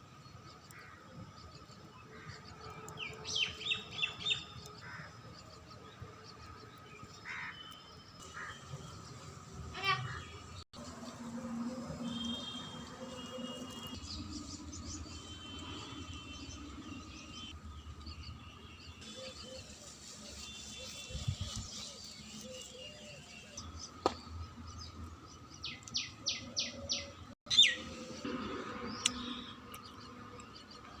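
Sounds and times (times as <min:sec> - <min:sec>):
birds chirping and calling: 0:18.9 - 0:31.0.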